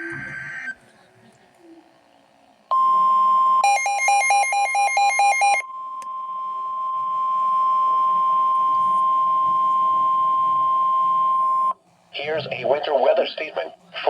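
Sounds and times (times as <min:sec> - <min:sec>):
loud steady alarm tone: 0:03.6 - 0:05.7.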